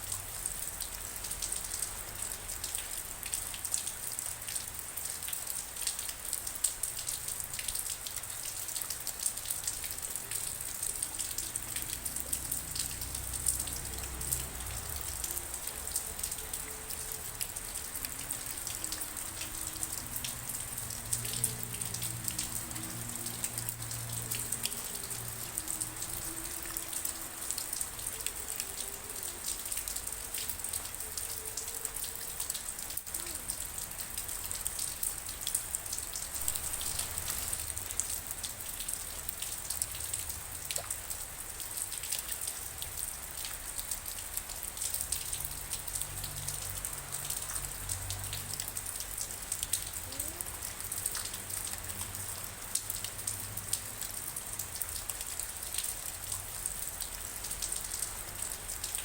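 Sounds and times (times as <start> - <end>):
rain drops pattering: 0.0 - 59.0.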